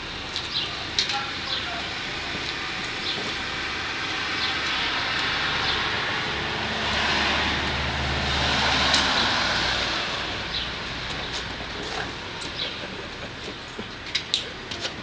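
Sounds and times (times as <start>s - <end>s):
vehicle passing by: 2.6s - 13.2s.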